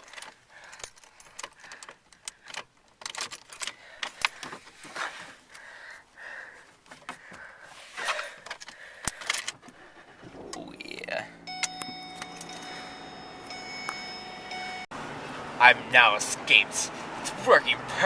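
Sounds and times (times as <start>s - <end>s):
small metal parts jangling and scraping: 0.0s - 4.9s.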